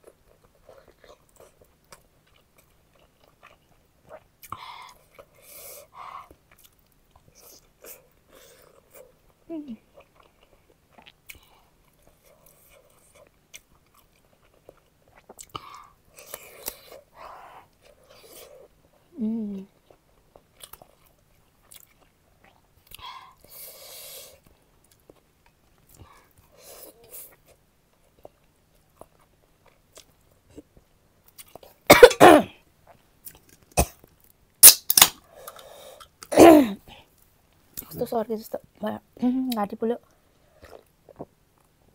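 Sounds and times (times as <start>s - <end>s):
person chewing wetly: 0.0s - 5.6s, 6.2s - 19.1s, 19.7s - 23.6s, 40.5s - 41.7s
woman coughing hard: 31.9s - 32.6s, 36.3s - 36.8s.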